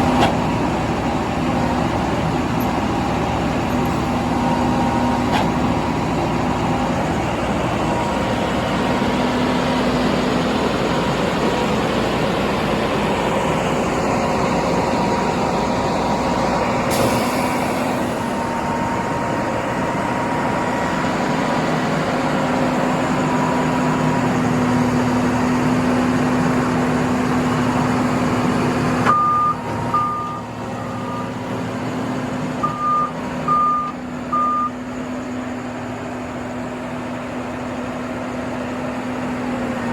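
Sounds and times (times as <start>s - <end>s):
diesel engine running: 0.0s - 39.9s
backup alarm beeping: 29.1s - 31.4s, 32.6s - 34.8s.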